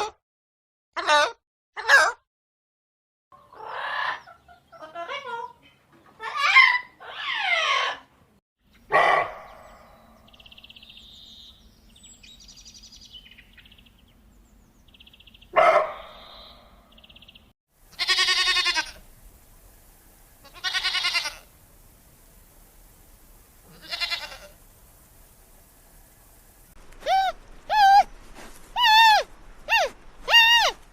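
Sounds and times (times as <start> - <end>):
animal calls: 28.8 - 30.8.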